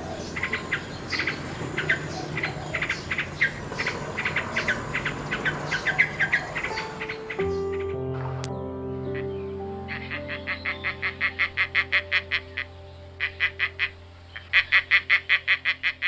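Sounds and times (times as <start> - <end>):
small animals chirping: 0.0 - 8.5.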